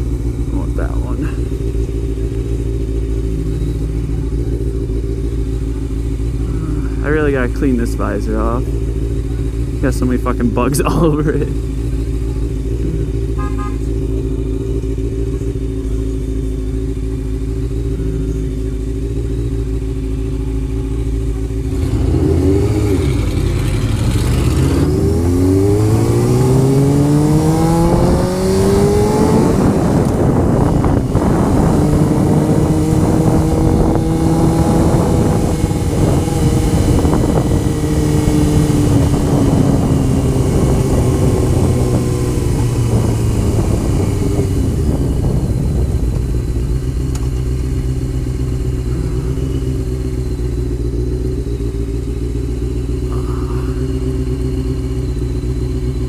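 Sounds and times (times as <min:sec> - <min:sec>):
motorcycle engine accelerating: 0:00.0 - 0:56.0
wind noise on microphone: 0:25.7 - 0:46.6.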